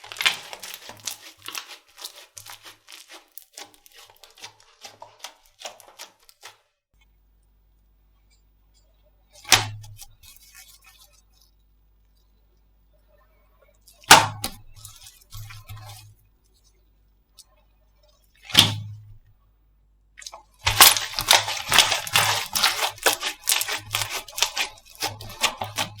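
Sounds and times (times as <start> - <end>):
slime crackling and popping: 0.0 - 6.6, 20.2 - 26.0
slime popping: 0.0 - 6.6, 20.2 - 26.0.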